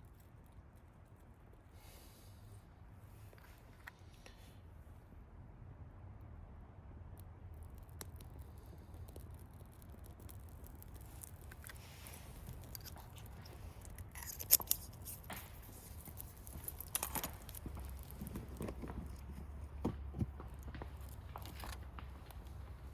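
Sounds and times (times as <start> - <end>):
small objects clicking and clinking: 7.6 - 19.5.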